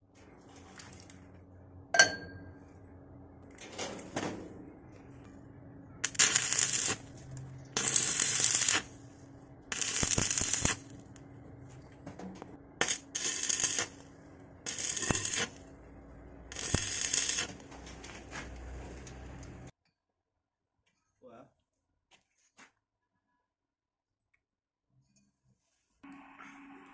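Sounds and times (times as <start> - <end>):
ringing metallic clink: 2.0 - 2.6
welding arc crackling and hissing: 6.0 - 9.1, 9.7 - 11.1, 12.8 - 15.8, 16.4 - 19.7.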